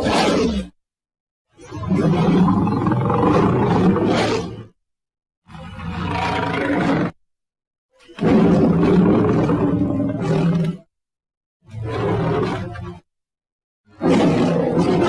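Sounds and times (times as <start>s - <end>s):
cartoon alligator roars: 0.0s - 0.7s, 1.7s - 4.6s, 5.6s - 7.2s, 8.2s - 10.8s, 11.8s - 12.8s, 14.0s - 15.0s.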